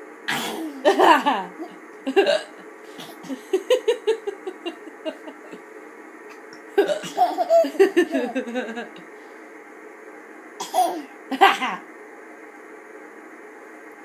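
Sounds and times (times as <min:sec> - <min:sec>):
child giggling: 0:03.2 - 0:05.6, 0:06.8 - 0:09.0.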